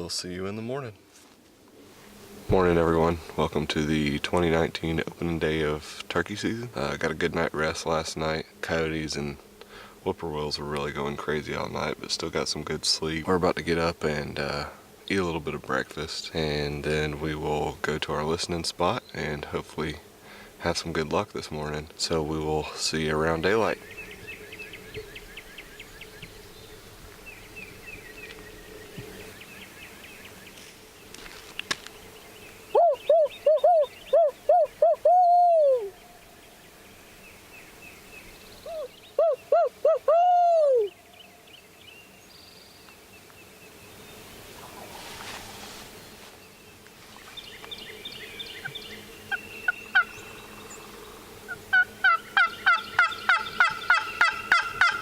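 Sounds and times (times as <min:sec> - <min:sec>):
faint songbirds singing: 0:02.4 - 0:40.1, 0:40.8 - 0:45.0, 0:46.2 - 0:55.0
high bird calls: 0:31.9 - 0:45.0, 0:46.4 - 0:55.0
turkey gobbling: 0:49.9 - 0:50.2, 0:51.5 - 0:55.0.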